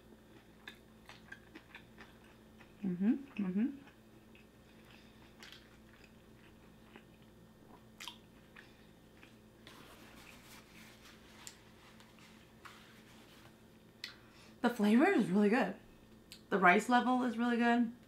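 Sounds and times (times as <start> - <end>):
person chewing food: 0.0 - 14.3.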